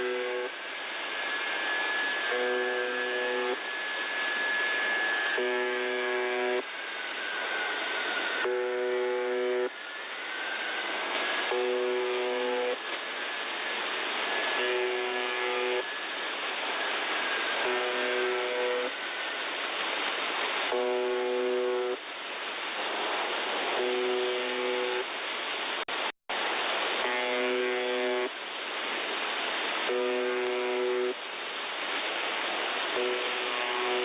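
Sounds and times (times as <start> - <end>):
harsh buzz tone: 0.0 - 0.6, 1.7 - 19.2, 20.7 - 22.0, 23.7 - 25.1, 26.8 - 28.3, 29.9 - 31.2, 32.9 - 34.0
radio static: 0.0 - 0.6, 14.4 - 16.0, 22.9 - 25.1, 26.9 - 28.3, 29.8 - 31.2, 32.8 - 34.0.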